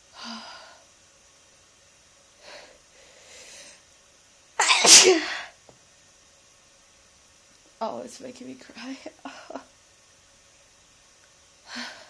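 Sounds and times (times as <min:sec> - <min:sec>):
loud wet sneeze: 0:04.6 - 0:05.5
soft short sounds before sneeze: 0:04.6 - 0:05.5.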